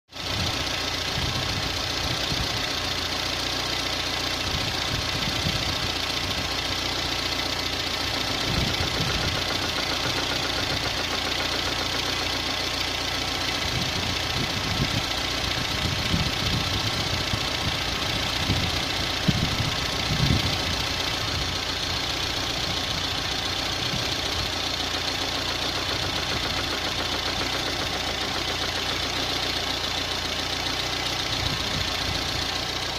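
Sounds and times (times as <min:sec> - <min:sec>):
car engine running: 0:00.1 - 0:32.9
camshaft knocking: 0:07.7 - 0:32.0.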